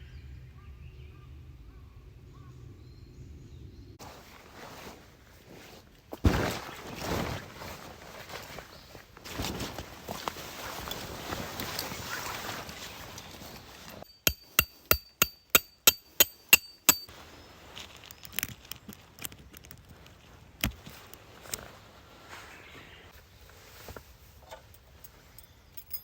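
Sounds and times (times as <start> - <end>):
sharp striking blows: 14.0 - 17.1.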